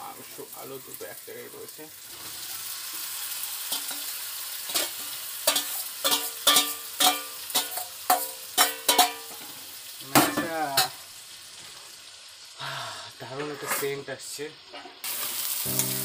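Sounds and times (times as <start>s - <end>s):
food sizzling in a pan: 0.0s - 16.0s
metal spatula knocking on pan: 5.5s - 9.3s.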